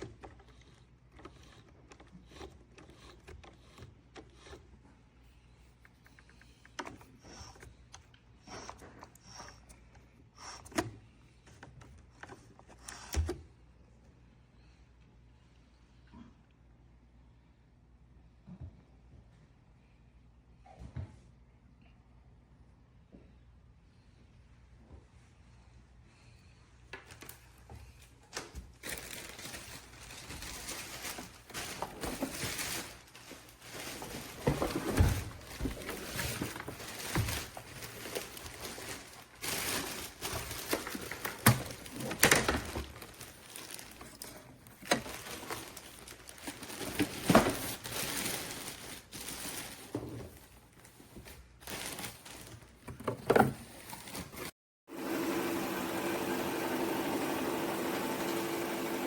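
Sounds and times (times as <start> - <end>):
rustling and crinkling: 27.0 - 54.6.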